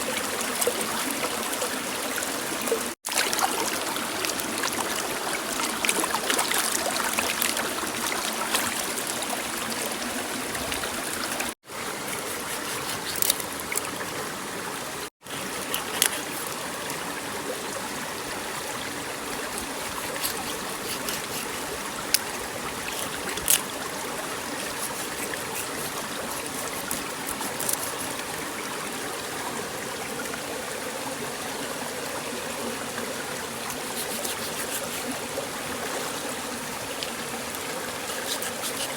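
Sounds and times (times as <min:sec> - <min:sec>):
water running and trickling: 0:00.0 - 0:38.9
small splashes: 0:03.0 - 0:14.0.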